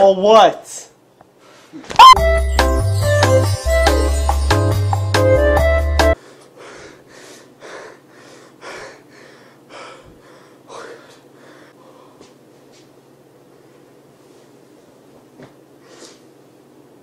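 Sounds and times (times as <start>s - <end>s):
person breathing hard: 6.2s - 12.4s.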